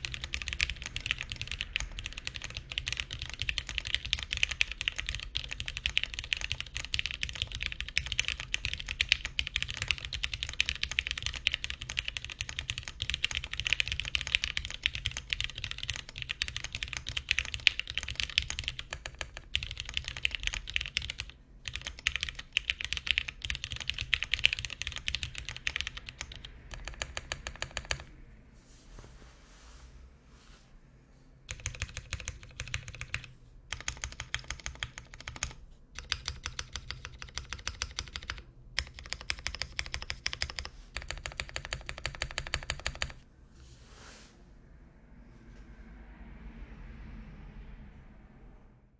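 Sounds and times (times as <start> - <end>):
fast mechanical keyboard typing: 0.0 - 28.1, 31.5 - 43.2.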